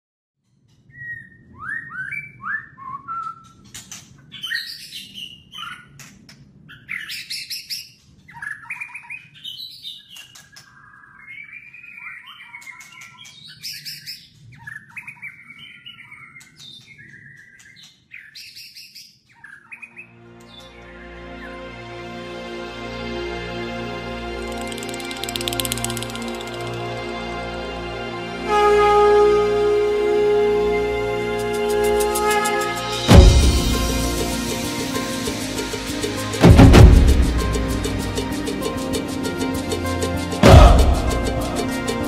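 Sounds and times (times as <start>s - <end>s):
birds chirping: 24.4s - 27.2s.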